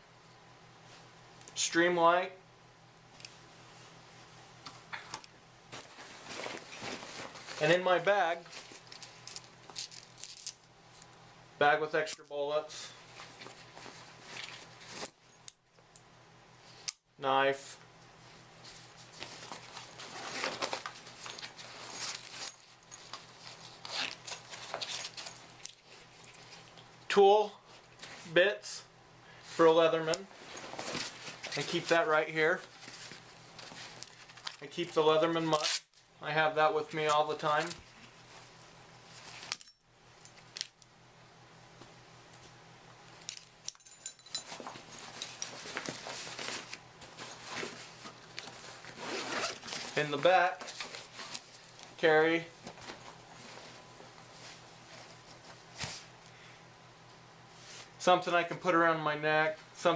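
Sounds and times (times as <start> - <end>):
gear rummaged out of bag: 5.7 - 7.8, 8.4 - 10.6, 18.7 - 26.7, 30.3 - 32.0, 43.3 - 52.0
small metal tools clinking: 43.2 - 45.7.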